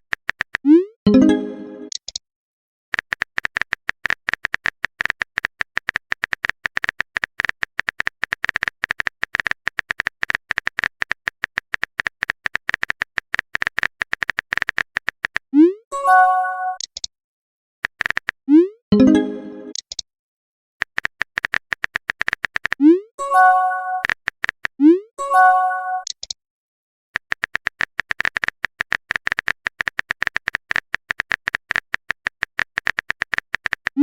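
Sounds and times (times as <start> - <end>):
phone keyboard typing clicks: 0.1 - 2.2, 3.0 - 15.4, 17.8 - 18.4, 20.8 - 22.8, 24.0 - 24.8, 26.0 - 26.4, 27.2 - 34.0
pitched chime: 1.1 - 1.9, 18.9 - 19.8.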